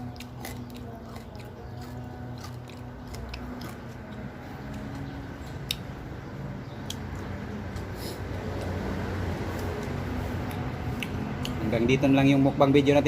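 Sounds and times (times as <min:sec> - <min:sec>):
crunchy chewing: 0:00.0 - 0:11.7
mouth clicks: 0:09.6 - 0:11.6.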